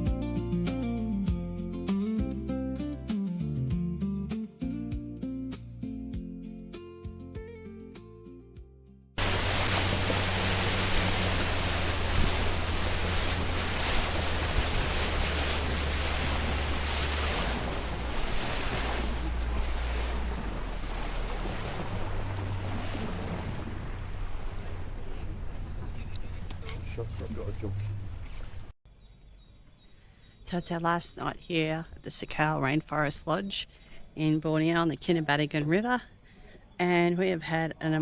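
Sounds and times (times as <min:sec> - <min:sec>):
acoustic guitar music: 0:00.0 - 0:08.5
wind noise on microphone: 0:09.2 - 0:27.0
low engine drone: 0:09.2 - 0:28.3.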